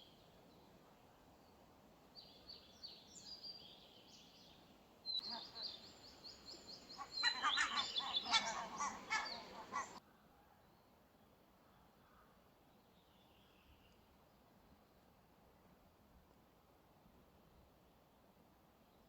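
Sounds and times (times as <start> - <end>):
birds chirping: 5.1 - 10.0
harsh rasping bird calls: 5.2 - 10.0.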